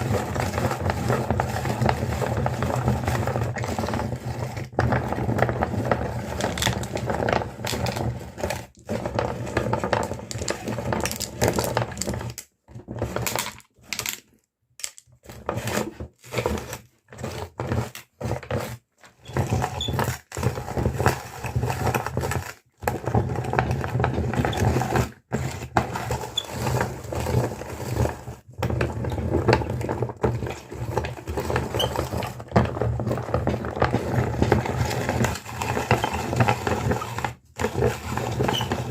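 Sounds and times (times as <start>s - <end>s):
candy crunching and crackling: 0.0s - 12.5s
meat grinder motor hum: 17.2s - 38.9s.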